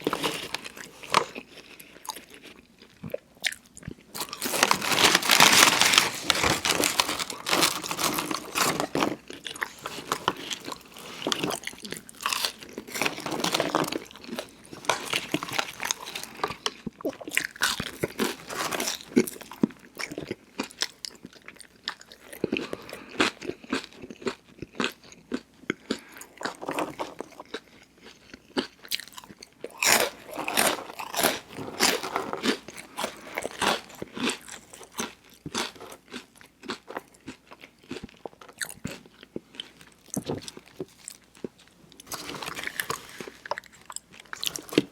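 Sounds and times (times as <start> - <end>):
chewing and crunching food: 0.0 - 44.9.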